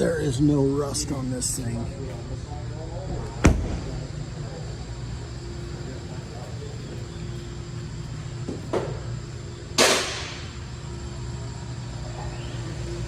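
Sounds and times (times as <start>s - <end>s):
steady low hum: 0.0s - 13.0s
loud sharp bang: 3.4s - 4.1s, 9.8s - 10.6s.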